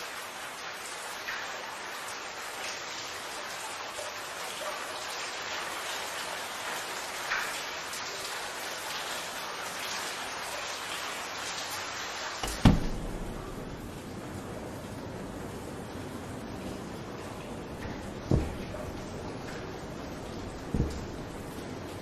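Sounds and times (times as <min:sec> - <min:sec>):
steady hiss: 0:11.2 - 0:22.0
loud knock: 0:12.4 - 0:13.8, 0:18.3 - 0:19.1, 0:20.4 - 0:21.6.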